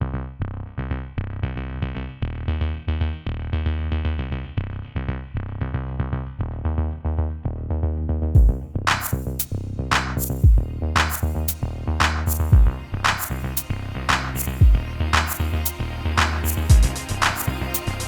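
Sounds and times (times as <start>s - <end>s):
electronic music with drum machine: 8.4s - 18.0s.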